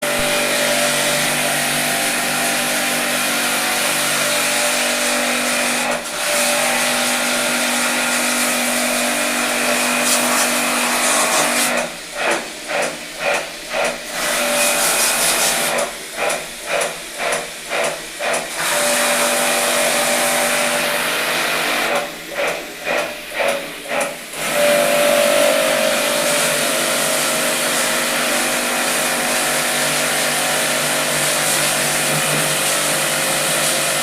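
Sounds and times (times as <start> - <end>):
hiss of air spray: 10.0 - 11.6, 14.6 - 15.8.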